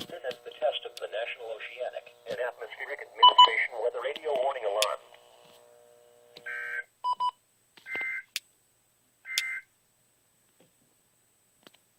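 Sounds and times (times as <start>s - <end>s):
digital data tone bursts: 3.2s - 3.7s.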